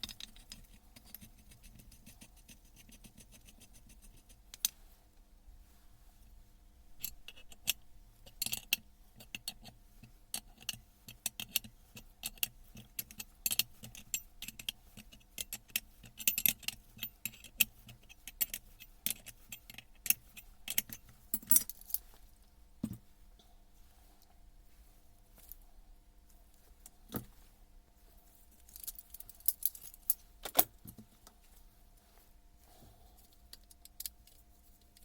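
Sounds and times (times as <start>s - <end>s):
small metal parts clinking: 7.0s - 9.6s, 10.4s - 22.0s, 28.6s - 31.0s, 33.2s - 35.0s.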